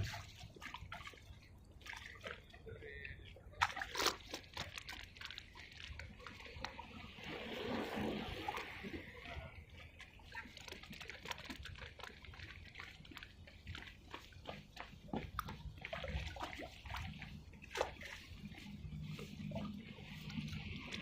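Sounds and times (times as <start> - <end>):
seawater splashing and sloshing: 0.0 - 21.0
wave washing in: 7.1 - 9.3.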